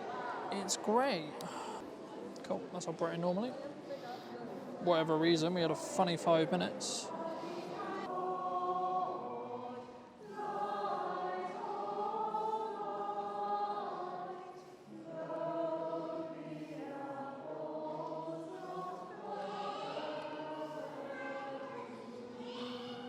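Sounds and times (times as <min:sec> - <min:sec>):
choir singing: 0:04.8 - 0:23.0.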